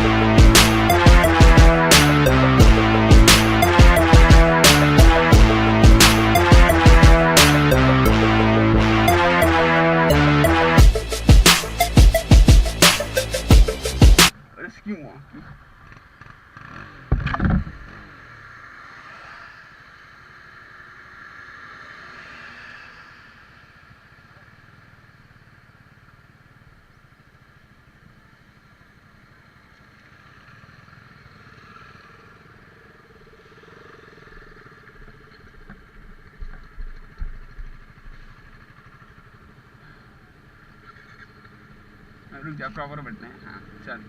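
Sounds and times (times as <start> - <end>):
loud low thumps: 0.0 - 14.3
motorcycle engine rumble: 0.0 - 18.6, 24.2 - 44.0.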